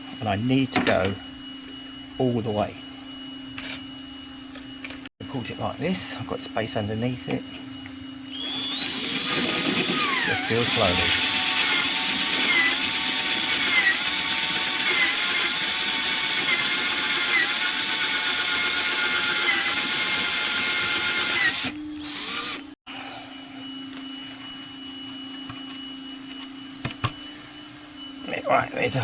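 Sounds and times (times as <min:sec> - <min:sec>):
electric drill drilling: 0:08.3 - 0:22.8.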